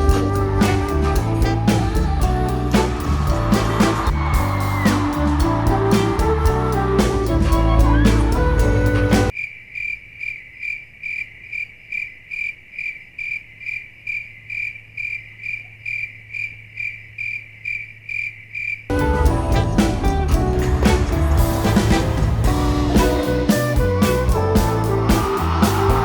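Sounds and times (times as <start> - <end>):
background music: 0.0 - 9.3, 18.9 - 26.0.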